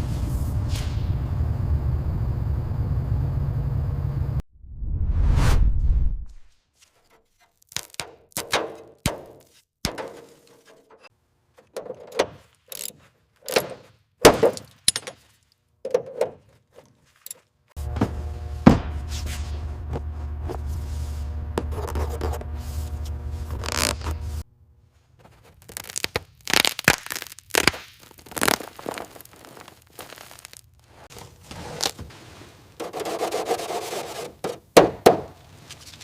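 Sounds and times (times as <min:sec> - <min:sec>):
low machine hum: 0:00.0 - 0:04.4, 0:17.8 - 0:24.4
metal parts knocking and scraping: 0:09.9 - 0:17.5.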